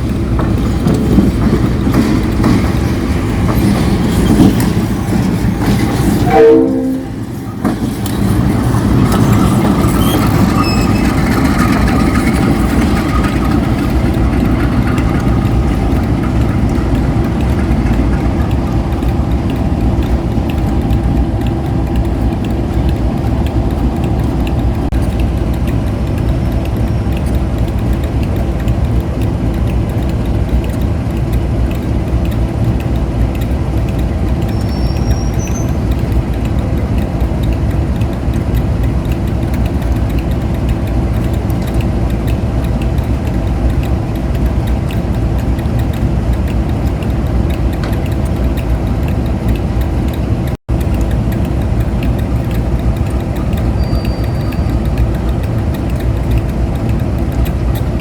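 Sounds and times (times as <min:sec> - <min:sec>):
diesel locomotive engine idling: 0:00.0 - 0:58.0.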